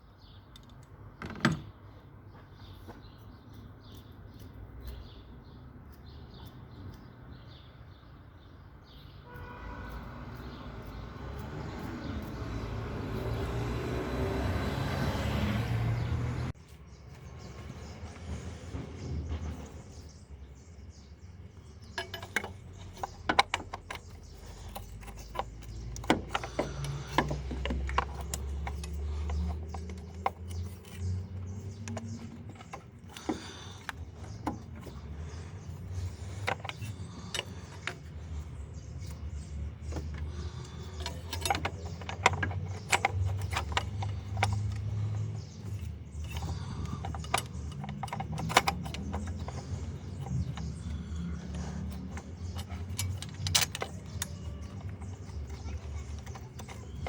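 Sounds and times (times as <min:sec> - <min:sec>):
metallic clicks of hand tools: 0:21.8 - 0:57.0.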